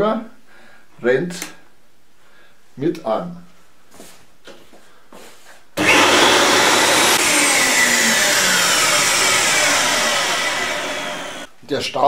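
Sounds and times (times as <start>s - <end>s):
circular saw running: 5.8s - 11.5s
vacuum cleaner running: 5.8s - 11.5s.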